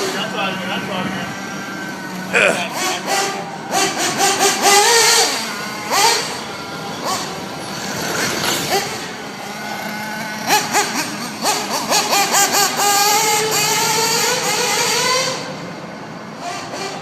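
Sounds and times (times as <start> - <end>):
rc car motors revving: 0.0 - 17.0.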